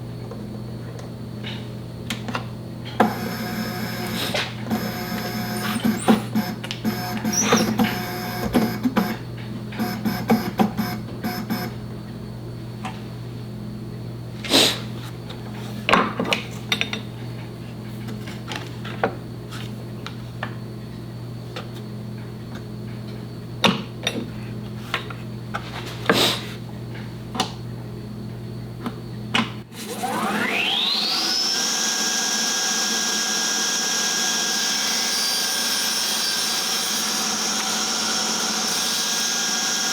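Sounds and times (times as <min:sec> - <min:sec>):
rising whine: 0:03.0 - 0:09.1.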